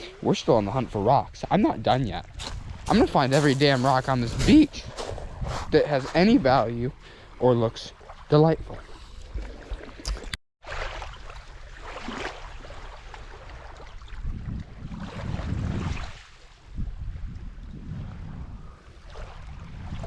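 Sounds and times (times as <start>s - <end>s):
wind buffeting microphone: 0.8s - 7.2s, 13.9s - 20.0s.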